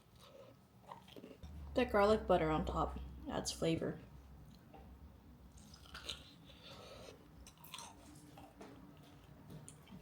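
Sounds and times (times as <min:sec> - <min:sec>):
faint chewing of bread: 0:00.0 - 0:01.6, 0:04.2 - 0:10.0.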